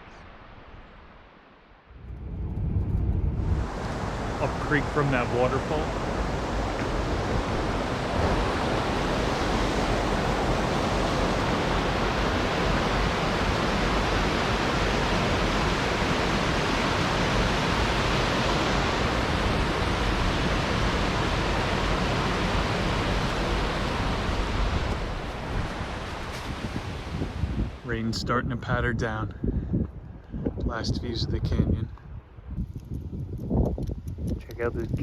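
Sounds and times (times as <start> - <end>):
waterfall roaring: 3.6 - 27.4.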